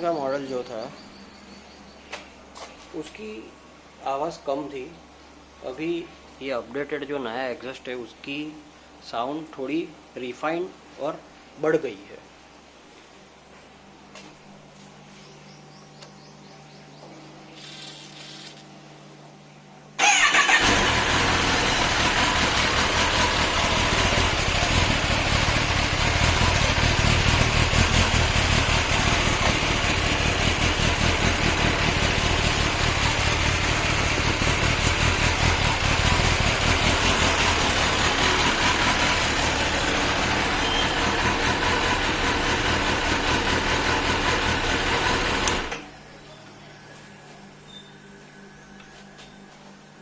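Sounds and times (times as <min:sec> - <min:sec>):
motorcycle engine starting and idling: 0:20.0 - 0:45.9.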